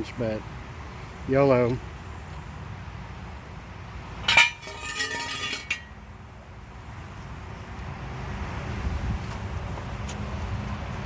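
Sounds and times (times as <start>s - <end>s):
sharp metal clank: 4.2s - 5.9s
ringing metallic clinking: 4.2s - 6.0s.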